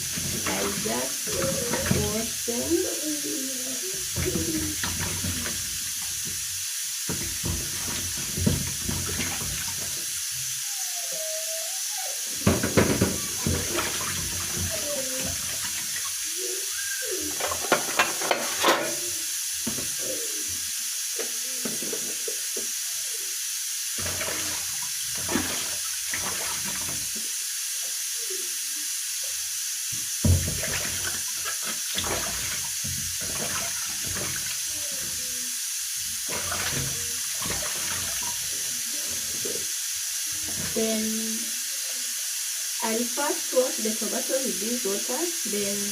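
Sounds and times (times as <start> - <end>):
water splashing in a basin: 0.0 - 2.9, 3.9 - 10.6, 12.4 - 20.3, 24.0 - 27.2, 30.2 - 41.6
steady hiss: 0.0 - 45.9.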